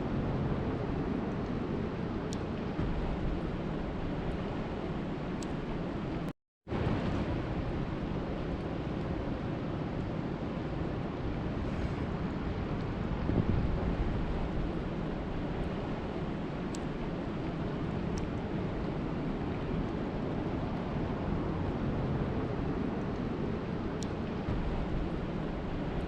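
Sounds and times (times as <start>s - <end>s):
wind rumbling on microphone: 0.0s - 26.0s.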